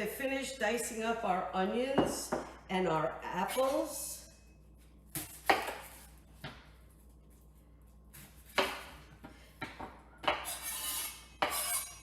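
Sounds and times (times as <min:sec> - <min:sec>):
knife rasping cuts: 0:10.3 - 0:12.0.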